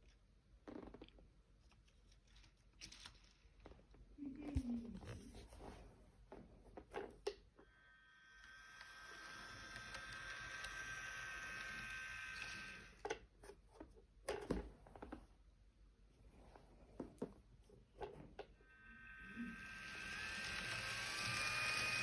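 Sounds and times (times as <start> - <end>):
faint steady whine: 7.6 - 13.2, 18.6 - 22.0.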